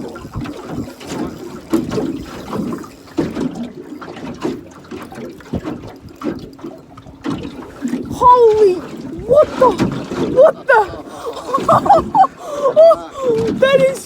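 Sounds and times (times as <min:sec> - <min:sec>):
water slapping against boat hull: 0:00.0 - 0:14.0.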